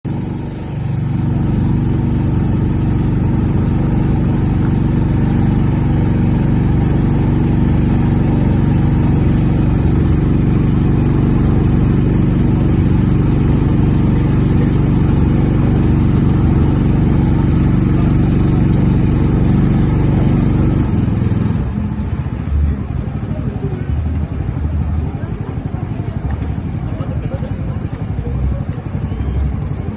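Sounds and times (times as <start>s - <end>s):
boat engine droning: 0.1s - 29.9s.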